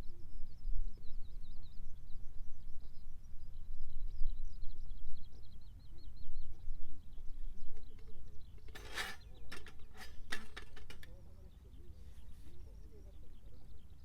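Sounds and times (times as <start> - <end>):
small bird singing: 0.0 - 14.0
sharp clicks clattering: 7.9 - 11.2.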